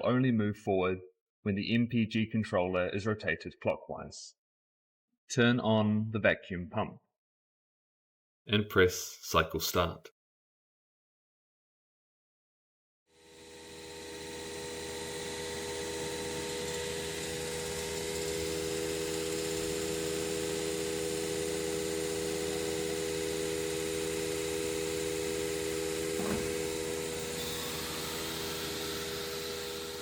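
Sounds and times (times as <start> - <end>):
short knock: 26.2 - 26.7.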